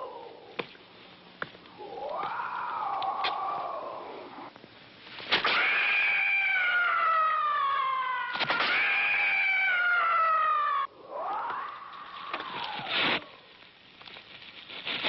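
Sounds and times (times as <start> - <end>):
monster cry rising in pitch: 1.8 - 4.5, 5.6 - 12.8
monster screeches: 5.4 - 13.4.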